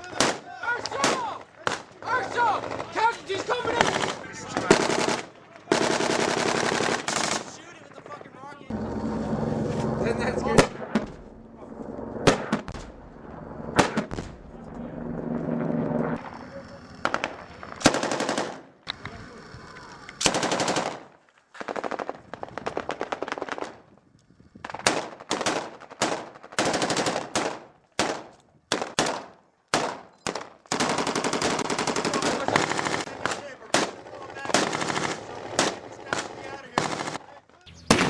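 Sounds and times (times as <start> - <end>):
machine-gun fire bursts: 3.8 - 7.5, 17.0 - 18.7, 20.2 - 21.1, 24.8 - 37.2.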